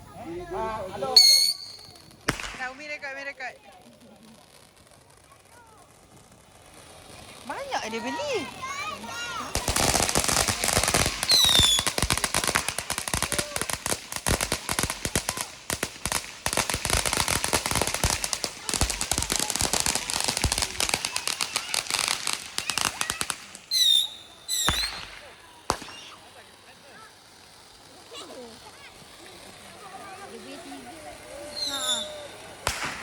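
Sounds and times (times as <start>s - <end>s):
firecrackers cracking: 0.0s - 33.0s
high falling whistles: 1.2s - 2.2s, 11.3s - 11.9s, 23.7s - 25.1s, 31.6s - 32.3s.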